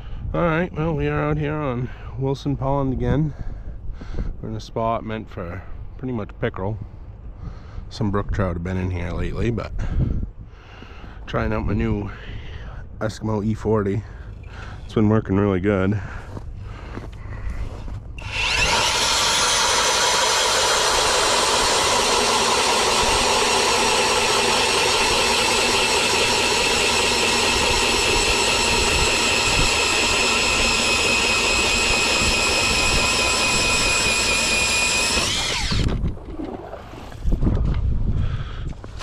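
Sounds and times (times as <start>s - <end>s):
wind on microphone: 9.2s - 10.6s, 27.5s - 30.8s, 35.2s - 39.0s
electric ice auger drilling: 18.2s - 36.8s.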